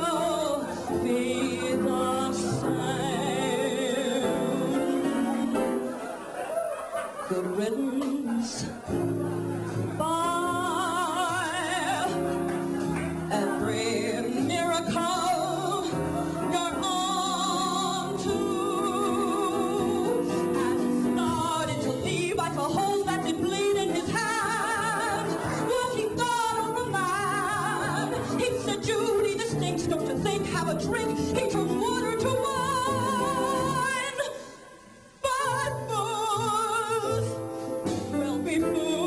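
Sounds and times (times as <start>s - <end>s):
woman singing with vibrato: 0.0s - 6.0s, 7.2s - 39.0s
instrumental accompaniment: 35.7s - 39.0s.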